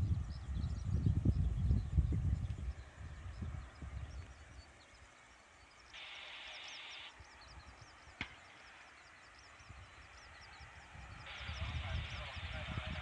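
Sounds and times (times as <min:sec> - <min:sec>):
faint high chirps: 0:03.4 - 0:12.6
radio static hiss: 0:05.4 - 0:13.0
radio click: 0:06.0 - 0:07.1, 0:11.3 - 0:13.0.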